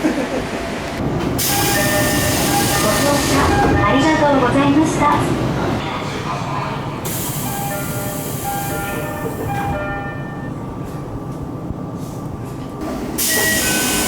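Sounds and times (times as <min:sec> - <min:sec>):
pneumatic door air hiss: 0:01.4 - 0:03.5, 0:07.1 - 0:08.8, 0:13.2 - 0:14.0.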